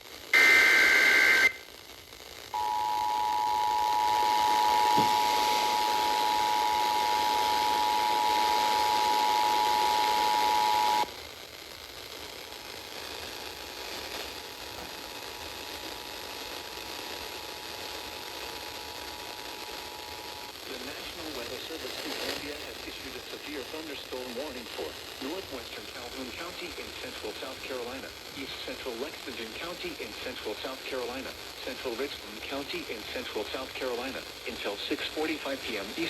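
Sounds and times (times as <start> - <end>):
radio hiss: 0.0 - 36.0
data burst: 0.4 - 1.6, 2.6 - 11.0
two-tone attention signal: 0.4 - 1.6, 2.6 - 11.0
warbling high tones: 2.6 - 11.0.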